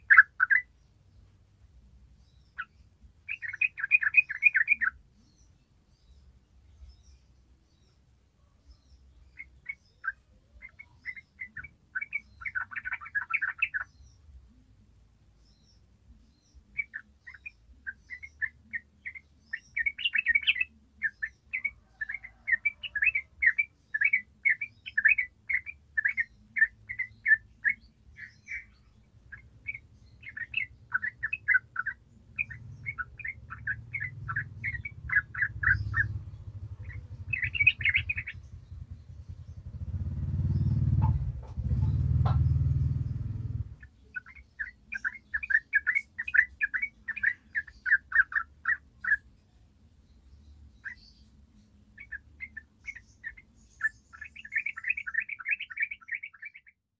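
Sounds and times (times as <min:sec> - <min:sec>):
bird singing rapid chirping notes: 0:00.0 - 0:56.9
low rumble: 0:32.4 - 0:43.8.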